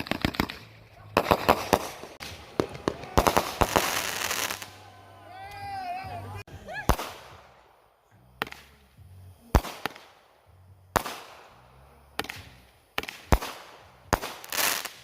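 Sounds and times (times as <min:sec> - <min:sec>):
firework cake bangs with crackling: 0:00.0 - 0:04.8, 0:06.9 - 0:07.6, 0:08.4 - 0:08.9, 0:09.5 - 0:10.3, 0:10.9 - 0:15.0.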